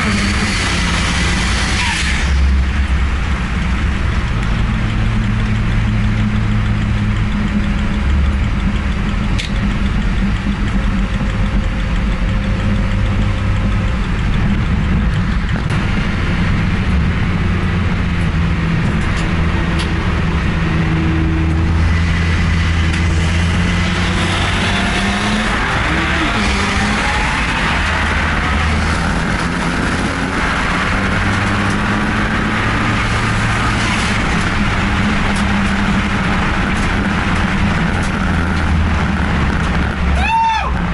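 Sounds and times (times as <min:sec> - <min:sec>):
car engine running: 0:00.0 - 0:40.9
road and wind noise: 0:00.0 - 0:40.9
rising tones: 0:18.6 - 0:37.9.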